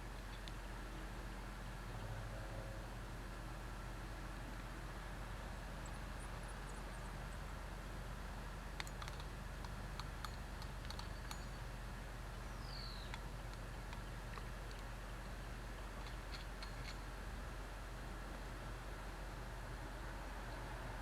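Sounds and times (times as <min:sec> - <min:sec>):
light clicks and ticks: 0:08.8 - 0:11.6, 0:12.3 - 0:14.9, 0:16.0 - 0:17.0.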